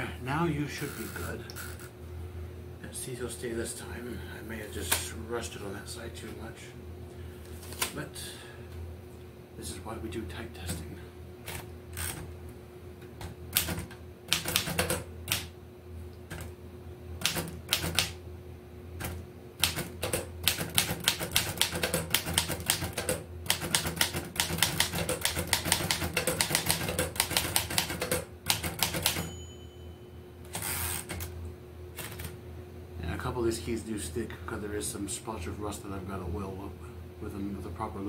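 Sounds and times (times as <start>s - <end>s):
typewriter keys clacking: 13.6s - 15.4s, 17.2s - 18.1s, 19.6s - 29.3s.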